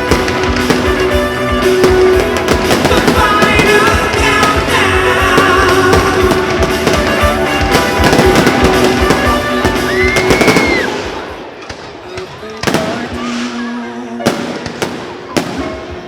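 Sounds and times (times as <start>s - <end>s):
loud rock music with singing: 0.0s - 10.9s
fireworks bursting and popping: 0.0s - 13.7s, 14.3s - 16.0s.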